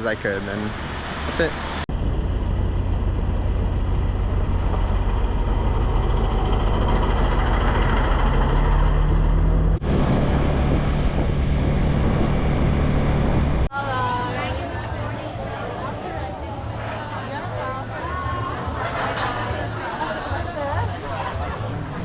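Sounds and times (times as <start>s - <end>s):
scooter engine drone: 1.9s - 13.7s
rushing noise: 4.1s - 13.7s.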